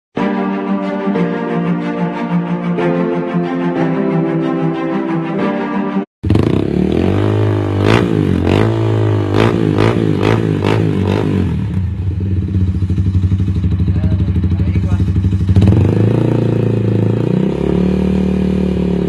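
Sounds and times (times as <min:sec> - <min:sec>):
motorcycle engine revving and idling: 0:06.2 - 0:19.0.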